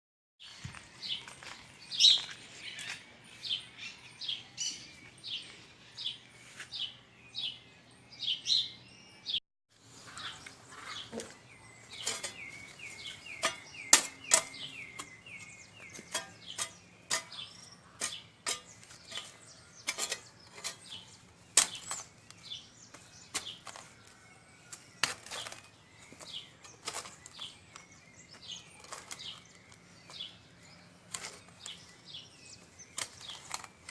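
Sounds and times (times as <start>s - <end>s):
small birds chirping: 0.4s - 33.9s
bird trill: 10.0s - 33.9s.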